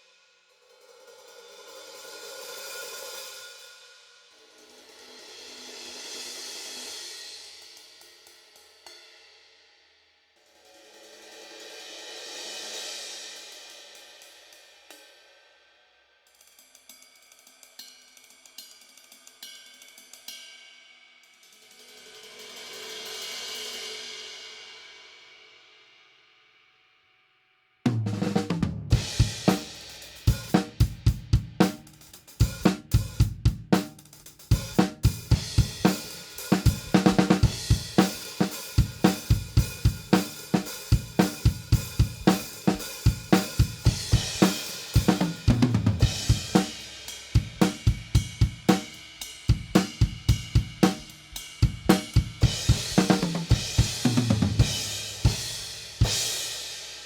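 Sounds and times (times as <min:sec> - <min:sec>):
drum kit groove: 0:27.9 - 0:57.0.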